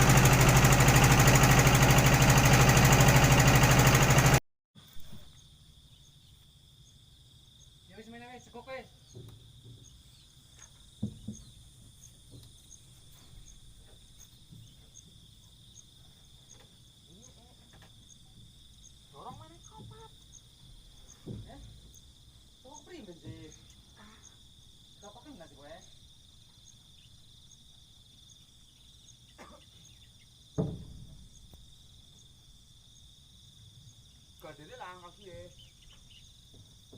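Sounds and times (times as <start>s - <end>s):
insect chorus buzzing and chirping: 4.8s - 36.9s
sudden thump: 11.0s - 11.5s, 30.6s - 31.3s
soft knocks: 11.0s - 11.6s, 30.6s - 31.2s.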